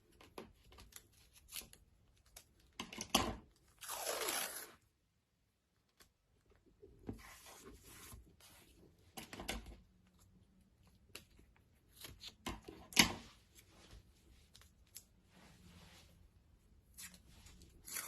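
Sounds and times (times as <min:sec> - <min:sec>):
masking tape rustling and tearing: 0:00.6 - 0:02.5, 0:03.7 - 0:04.8, 0:16.9 - 0:18.0.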